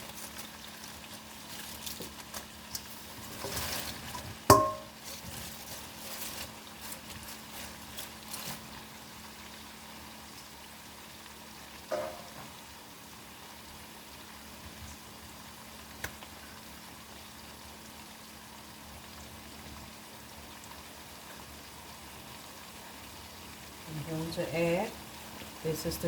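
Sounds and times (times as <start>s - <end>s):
onions sizzling in a pan: 0.0s - 26.0s
utensil clattering: 4.5s - 4.9s.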